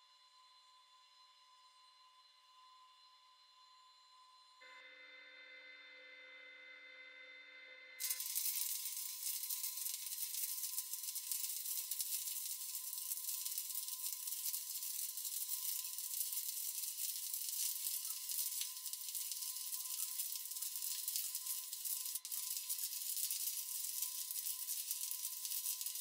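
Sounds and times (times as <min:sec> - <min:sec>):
welding arc crackling sizzle: 0:08.0 - 0:26.0.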